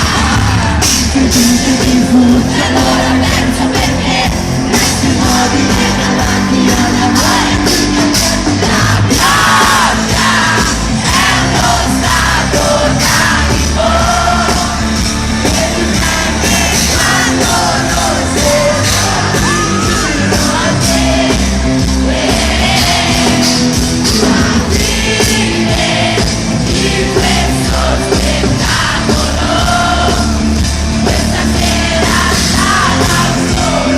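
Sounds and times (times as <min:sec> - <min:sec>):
crowd yelling: 0:00.0 - 0:01.2, 0:02.6 - 0:33.9
person singing: 0:00.0 - 0:21.6
drums: 0:00.0 - 0:33.9
live pop-rock band: 0:00.0 - 0:33.9.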